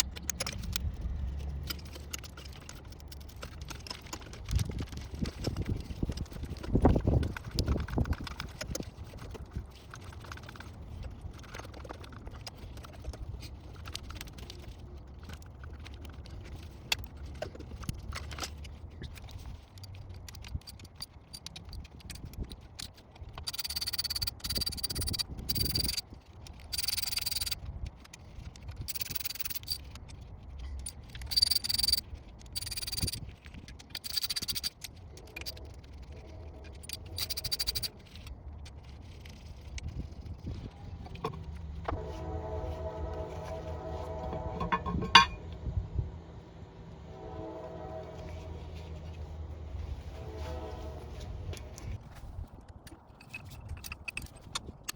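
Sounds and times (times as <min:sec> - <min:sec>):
metal tools clinking: 0:44.3 - 0:45.4.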